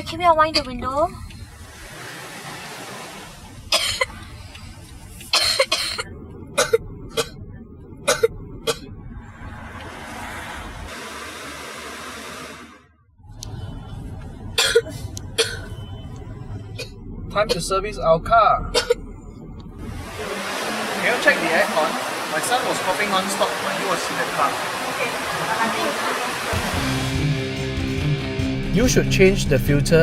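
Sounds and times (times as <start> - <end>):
boy coughing: 3.7 - 4.2, 5.3 - 6.0, 6.6 - 7.4, 14.6 - 15.7, 18.7 - 19.0
car cabin hiss: 10.9 - 12.8, 19.9 - 27.2.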